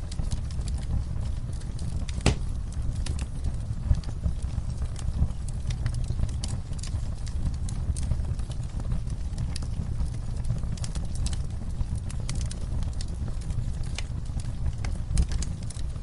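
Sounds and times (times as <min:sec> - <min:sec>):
low rumble of fire: 0:00.0 - 0:16.0
wood fire crackling: 0:00.0 - 0:16.0
loud fire pop: 0:02.1 - 0:02.6.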